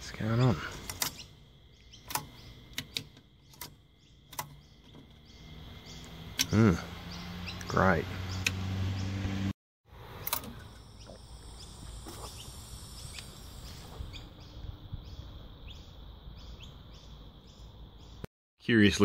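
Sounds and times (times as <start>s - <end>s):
small bird chirping: 0.0s - 9.3s, 10.5s - 18.3s.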